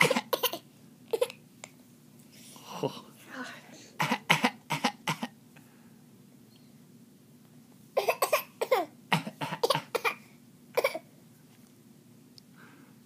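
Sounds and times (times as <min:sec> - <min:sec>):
person coughing: 0:00.0 - 0:00.6, 0:04.0 - 0:05.3, 0:08.0 - 0:10.2, 0:10.8 - 0:11.0.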